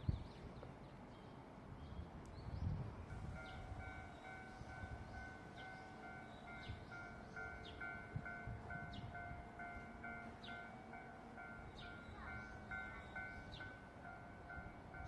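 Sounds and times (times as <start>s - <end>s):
level crossing warning bell: 3.1s - 15.0s.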